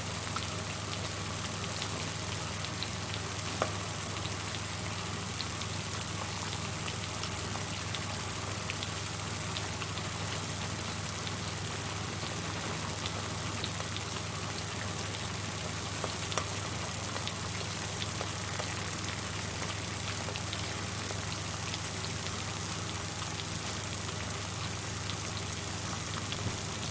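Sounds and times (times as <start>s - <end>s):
food sizzling in hot oil: 0.0s - 26.9s
oil popping and crackling: 15.6s - 22.4s.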